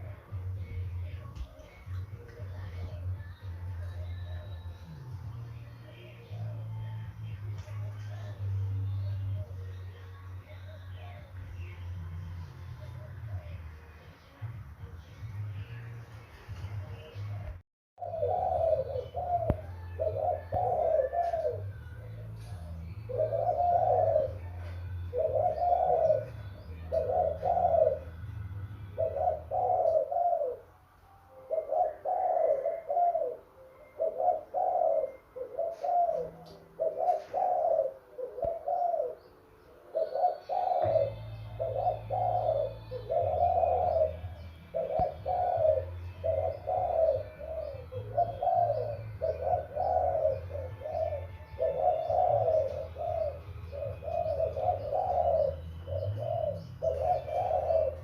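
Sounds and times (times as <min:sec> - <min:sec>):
dove cooing: 0:00.0 - 0:15.3, 0:16.4 - 0:58.0.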